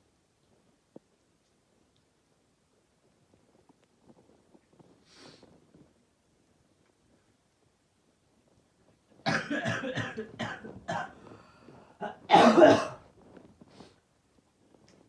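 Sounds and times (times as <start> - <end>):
person coughing: 9.3 - 11.2, 12.0 - 13.0.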